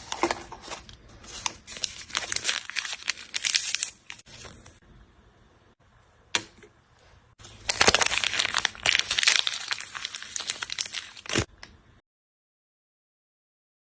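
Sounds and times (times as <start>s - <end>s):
plastic wrapping tearing and crinkling: 1.3s - 4.6s, 7.4s - 11.5s.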